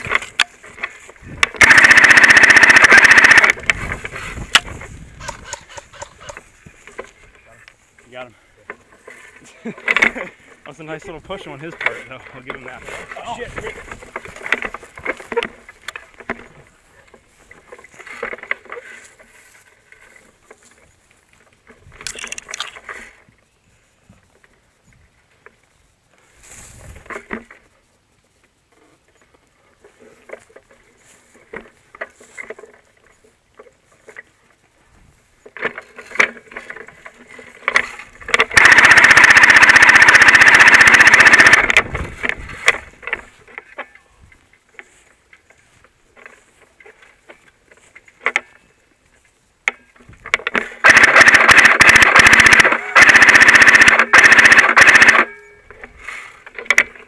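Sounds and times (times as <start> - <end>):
rapid airsoft gun burst: 1.4 - 3.6, 38.4 - 41.8, 50.8 - 55.3.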